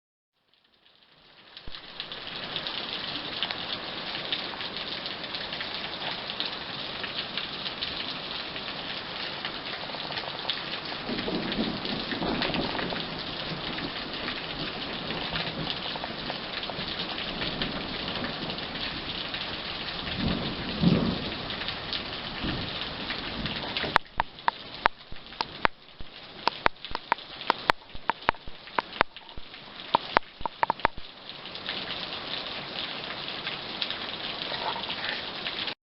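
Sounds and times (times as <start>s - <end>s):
heavy rain: 0.4s - 35.8s
sharp raindrop hits: 1.6s - 2.6s, 9.3s - 31.2s
thunder rumbling: 11.0s - 31.1s.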